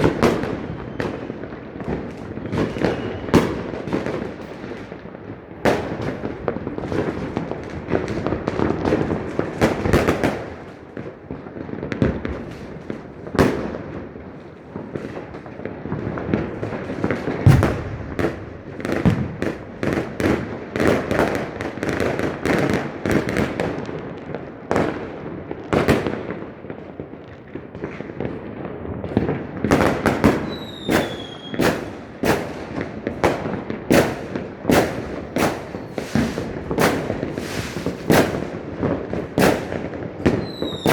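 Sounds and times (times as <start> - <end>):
falling firework whistle: 0.0 - 4.8, 30.2 - 31.9, 34.7 - 38.5, 39.4 - 40.9
fireworks bangs: 0.0 - 40.9
fireworks crackling: 0.0 - 40.9.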